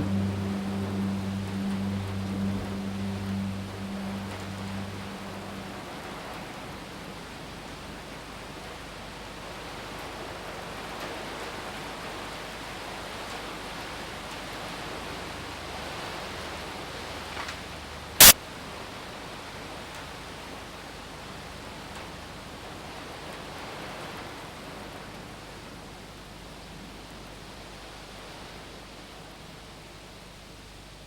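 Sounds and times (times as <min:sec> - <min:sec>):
steady hiss: 0:00.0 - 0:06.7
low hum: 0:00.0 - 0:07.4.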